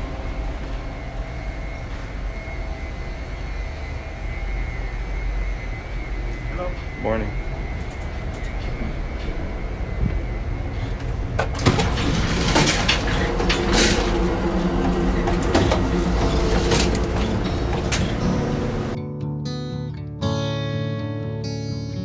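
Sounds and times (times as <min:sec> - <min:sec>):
passenger train rumbling: 0:00.0 - 0:19.0
sharp rattles and clatters: 0:11.4 - 0:19.0.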